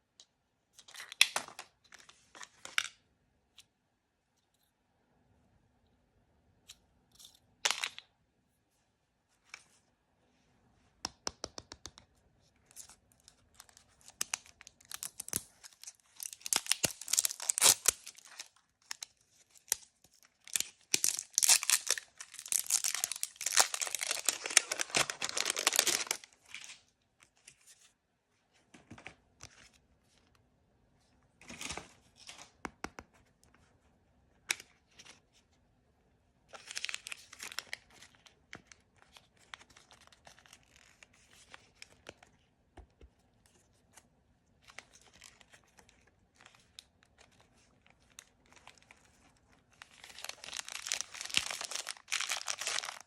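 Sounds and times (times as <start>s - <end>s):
plastic packaging tearing and crinkling: 13.6s - 26.7s, 36.6s - 37.9s, 49.8s - 53.0s.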